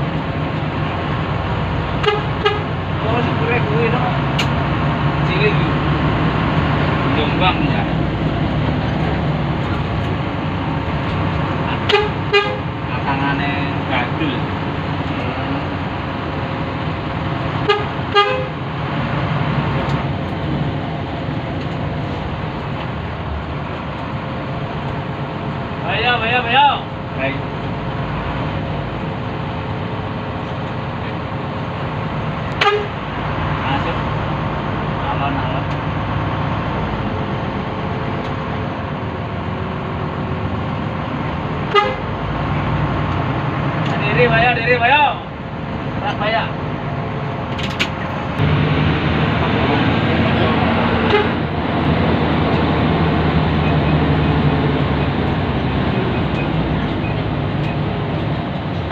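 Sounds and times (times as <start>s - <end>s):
bus engine drone: 0.0s - 58.9s
bus horn toots: 2.0s - 2.8s, 11.8s - 12.7s, 17.6s - 18.6s, 32.6s - 33.0s, 41.6s - 42.1s, 51.0s - 51.5s.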